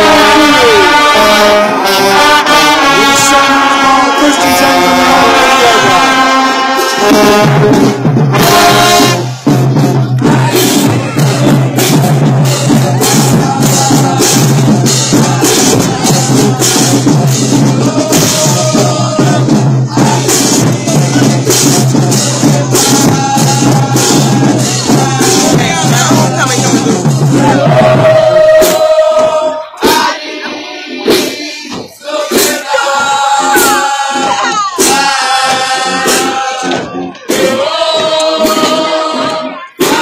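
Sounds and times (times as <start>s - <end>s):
band music with drum beat: 0.0s - 40.0s.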